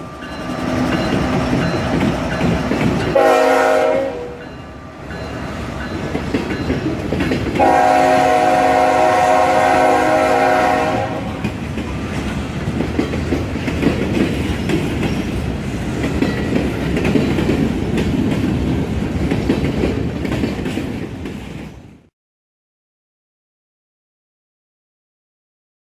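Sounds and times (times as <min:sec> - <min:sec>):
train wheels clattering on rails: 0:00.0 - 0:22.1
locomotive air horn: 0:03.1 - 0:04.4, 0:07.6 - 0:11.5.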